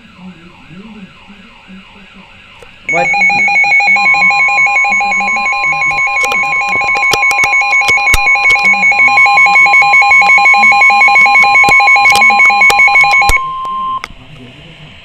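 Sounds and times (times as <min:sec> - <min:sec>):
steady high alarm tone: 0:00.0 - 0:14.1
rapid two-pitch alarm beeping: 0:02.9 - 0:14.1.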